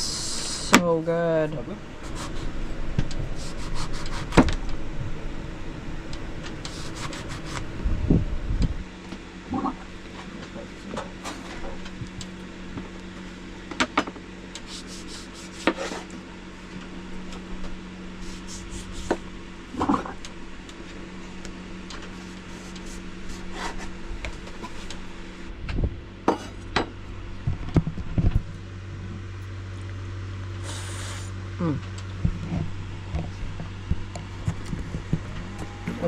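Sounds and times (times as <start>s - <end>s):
low hum: 0.0s - 36.0s
knife scraping on cutting board: 6.7s - 7.7s.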